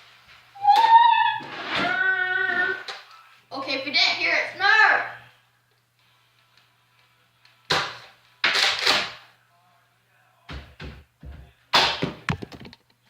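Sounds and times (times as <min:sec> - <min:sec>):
foam dart blaster pops: 0:07.7 - 0:09.1.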